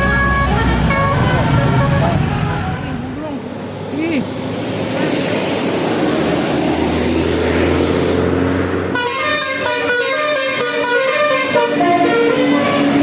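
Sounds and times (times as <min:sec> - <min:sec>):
musical bus horn playing tune: 0:00.0 - 0:03.0, 0:08.9 - 0:13.0
vehicle noise rushing: 0:00.0 - 0:13.0.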